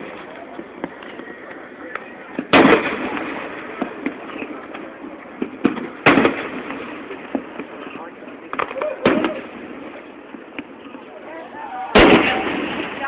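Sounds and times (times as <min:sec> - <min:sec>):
faint fireworks pops: 0:00.0 - 0:11.1, 0:12.0 - 0:13.0
fireworks booming: 0:02.2 - 0:10.9, 0:11.9 - 0:13.0.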